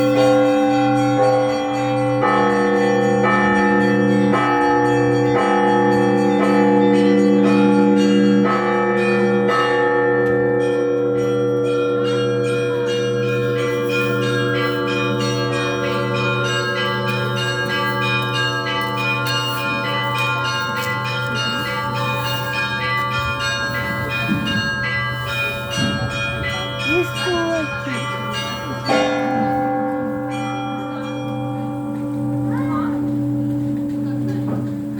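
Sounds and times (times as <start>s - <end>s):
small high bells struck: 0.0s - 32.7s
deep bell humming: 0.0s - 34.9s.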